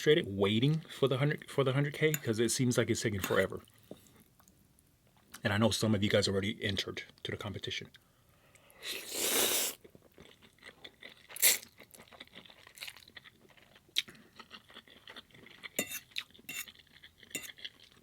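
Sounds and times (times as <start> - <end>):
person chewing with wet clicks: 9.8 - 18.0.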